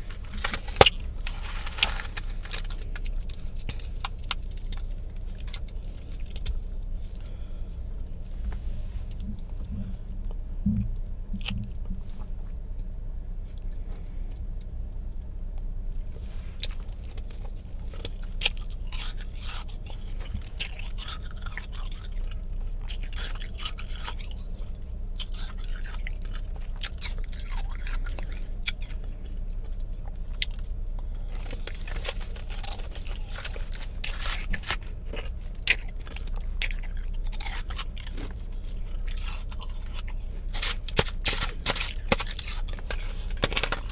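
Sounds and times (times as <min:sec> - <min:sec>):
ice crunching in blender: 0:00.0 - 0:04.7, 0:31.4 - 0:36.7, 0:37.3 - 0:43.9
steady low hum: 0:00.0 - 0:43.9.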